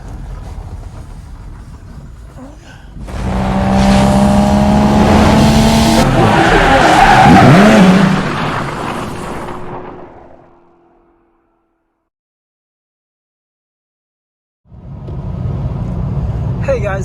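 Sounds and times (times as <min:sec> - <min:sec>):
tires squealing: 0:00.0 - 0:11.1
car engine revving: 0:03.0 - 0:11.4.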